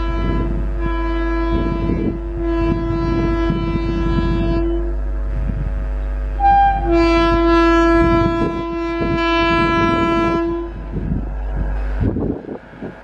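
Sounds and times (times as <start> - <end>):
locomotive air horn: 0.0 - 5.1, 6.4 - 10.9
rumble of passing train: 0.0 - 13.0.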